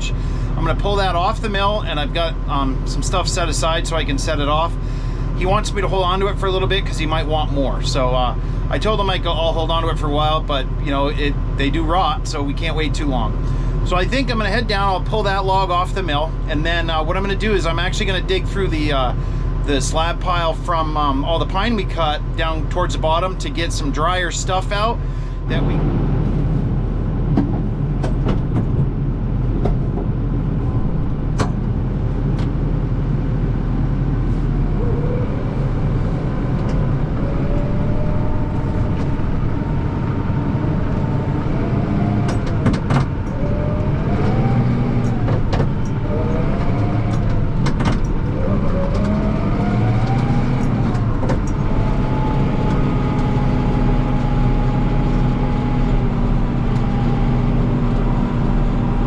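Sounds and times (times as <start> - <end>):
tractor diesel engine running: 0.0 - 59.0
knocks and rattles: 42.2 - 43.4, 46.6 - 48.2.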